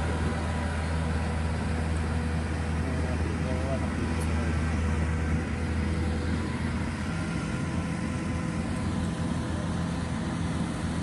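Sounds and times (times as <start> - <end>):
combine harvester engine running: 0.0 - 11.0.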